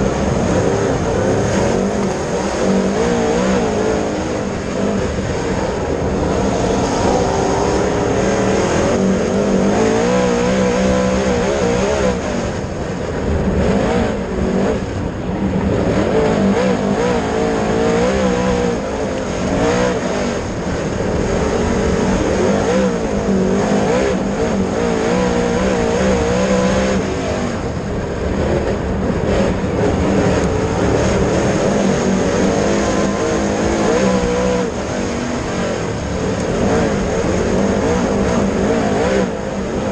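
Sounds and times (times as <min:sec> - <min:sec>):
race car engine revving: 0:00.0 - 0:39.9.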